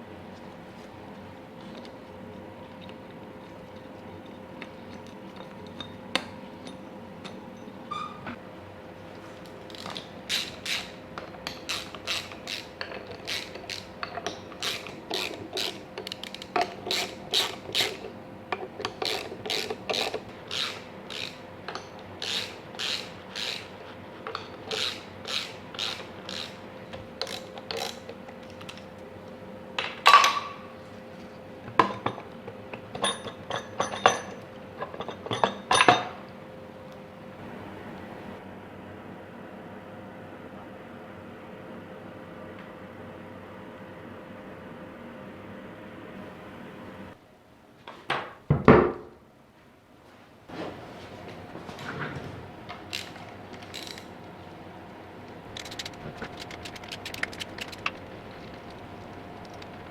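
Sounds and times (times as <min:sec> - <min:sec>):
ratchet wrench clicking: 0:09.7 - 0:10.9, 0:11.5 - 0:13.9, 0:14.6 - 0:18.0, 0:18.8 - 0:23.7, 0:24.3 - 0:26.6, 0:27.2 - 0:28.0, 0:52.9 - 0:54.1, 0:55.6 - 0:58.0.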